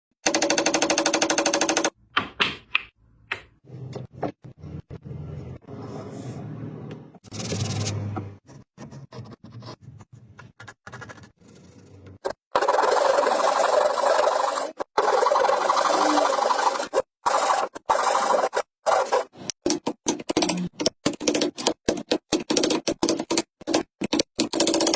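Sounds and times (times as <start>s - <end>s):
scraping and rasping on wood: 3.6s - 19.6s.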